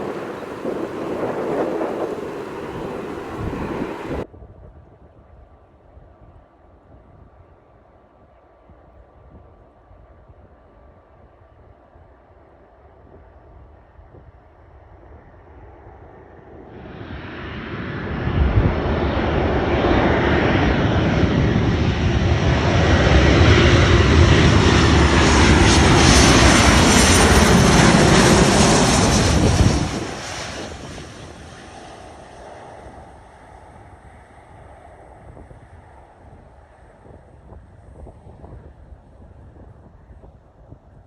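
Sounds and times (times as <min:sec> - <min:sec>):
high engine whine: 0:00.0 - 0:04.2
jet engines rumbling: 0:00.0 - 0:04.2, 0:19.6 - 0:36.1.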